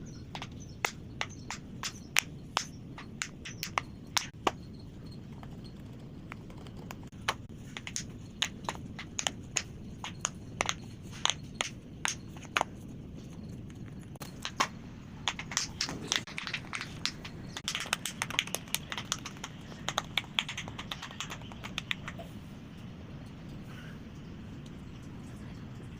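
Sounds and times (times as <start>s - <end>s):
fidget toy bubbles popping: 15.3s - 22.2s.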